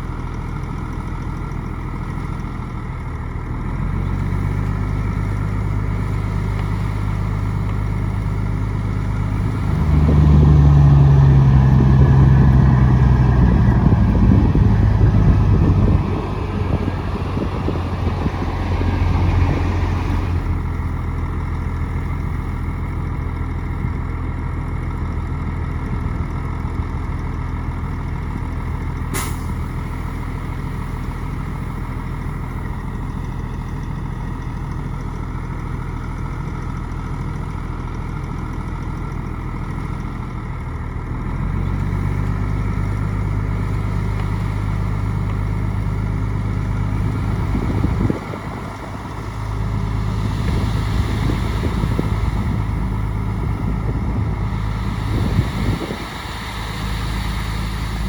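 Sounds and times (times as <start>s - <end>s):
bulldozer diesel engine revving: 0.0s - 58.0s.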